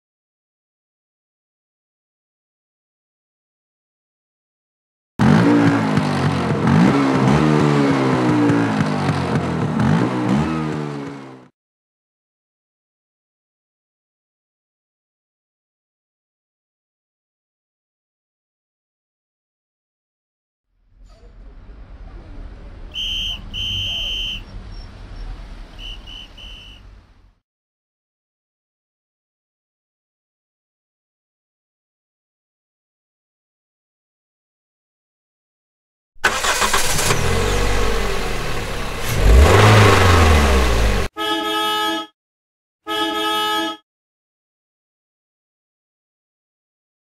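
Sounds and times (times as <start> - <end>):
vehicle engine revving: 5.2 - 11.5, 36.2 - 41.1
whistle blasts: 22.9 - 24.9, 25.7 - 27.0.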